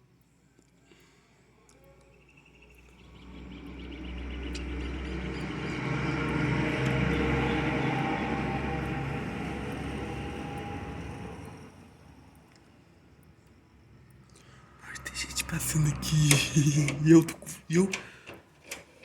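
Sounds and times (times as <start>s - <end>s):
motor vehicle passing by: 2.8s - 12.8s, 14.2s - 17.7s.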